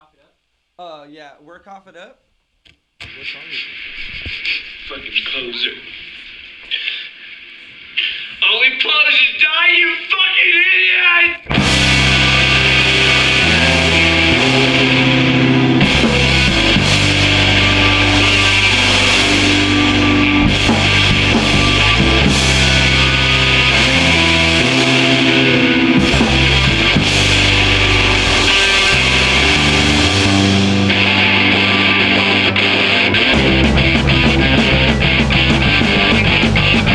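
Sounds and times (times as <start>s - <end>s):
electric guitars: 11.3s - 36.9s
bass line: 11.4s - 36.9s
drum kit with cymbals: 11.4s - 36.9s.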